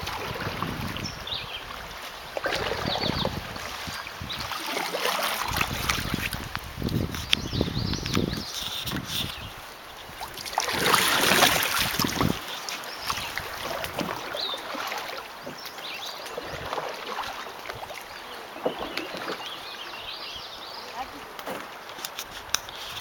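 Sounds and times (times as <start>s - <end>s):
water splashing: 0.0s - 23.0s
small knocks on canoe: 13.0s - 19.6s, 21.3s - 23.0s.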